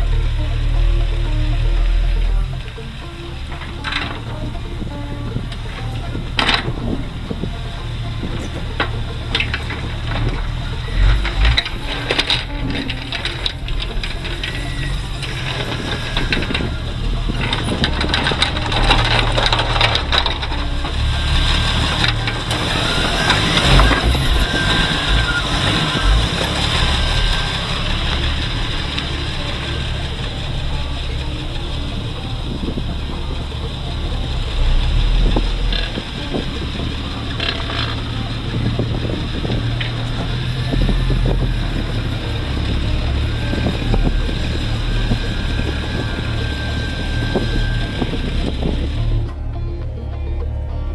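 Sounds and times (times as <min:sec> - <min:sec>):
engine running steadily: 0:00.0 - 0:50.9
clicks rattles and crunching: 0:03.5 - 0:31.4.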